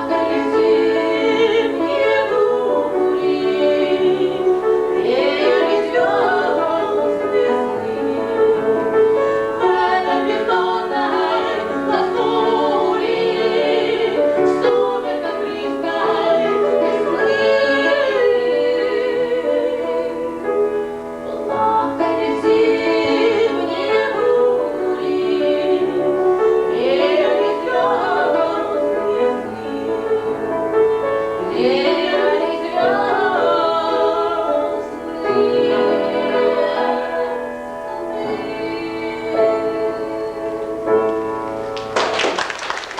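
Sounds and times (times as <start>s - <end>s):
women singing operatically: 0.0s - 41.3s
piano accompaniment: 0.0s - 42.9s.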